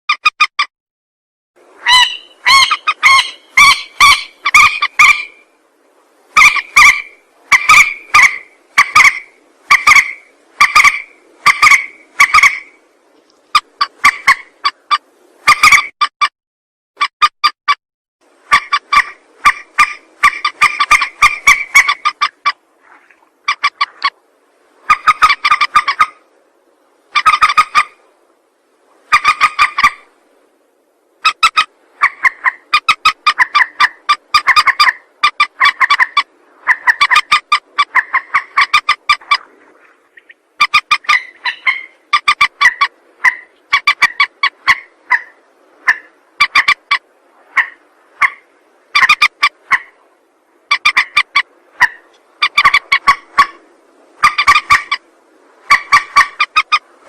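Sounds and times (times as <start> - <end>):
rail bird harsh calls: 1.8 - 5.4, 6.4 - 12.8, 40.6 - 50.0.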